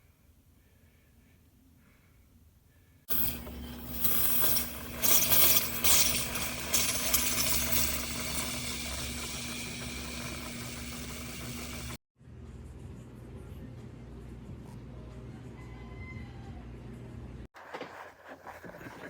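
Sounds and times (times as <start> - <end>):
coffee maker hissing: 3.1 - 12.0
coffee maker pump hum: 3.1 - 12.0
sputtering bursts: 3.1 - 12.0.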